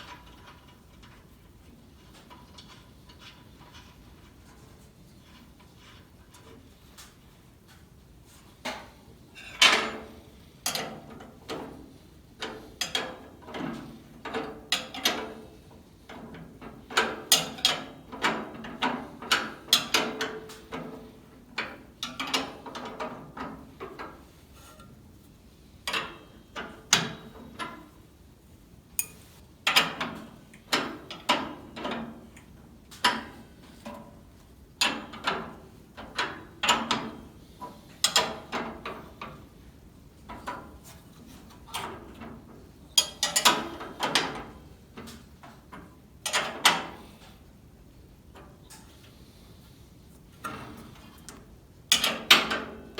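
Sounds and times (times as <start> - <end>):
metallic clicks and clanks of tools: 29.0 - 33.2, 43.0 - 46.9, 50.4 - 52.7.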